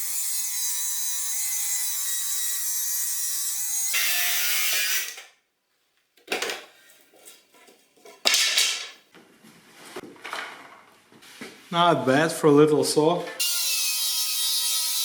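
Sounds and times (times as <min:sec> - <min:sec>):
power saw cutting wood: 0:03.4 - 0:05.2, 0:13.4 - 0:15.0.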